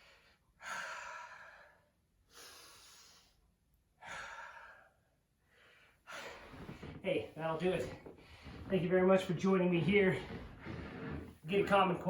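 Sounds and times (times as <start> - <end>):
man breathing deeply: 0.0 - 7.0.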